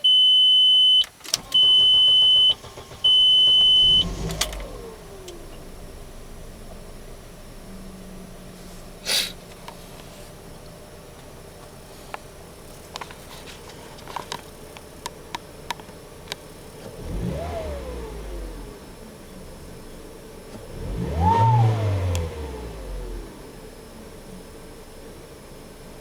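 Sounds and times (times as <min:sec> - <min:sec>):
turbo whistle: 0:00.0 - 0:04.2
car engine idling and revving: 0:01.2 - 0:26.0.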